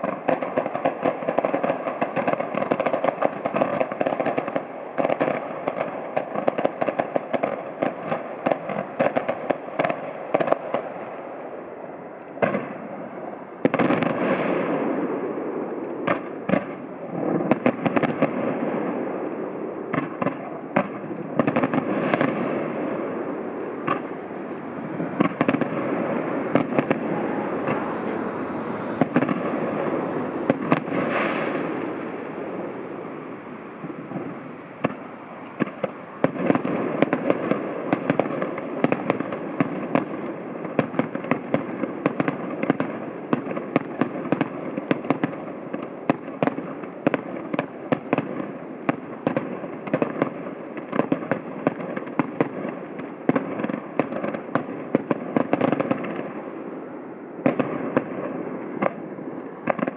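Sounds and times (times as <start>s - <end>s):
distant fireworks bangs and crackles: 0.0s - 59.9s.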